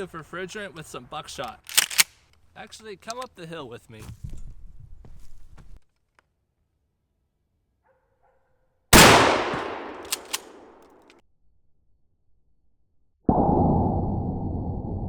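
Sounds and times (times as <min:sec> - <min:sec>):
short sharp clicks: 0:01.4 - 0:02.2, 0:09.9 - 0:10.7
shotgun blast hitting metal tank: 0:09.0 - 0:10.0.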